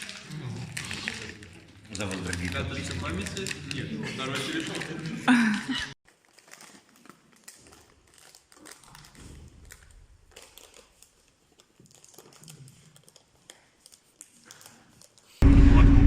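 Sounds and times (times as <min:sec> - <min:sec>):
faint rustling and crinkling: 0:00.0 - 0:05.3, 0:06.0 - 0:15.4
loud sound cutting off: 0:15.4 - 0:16.0.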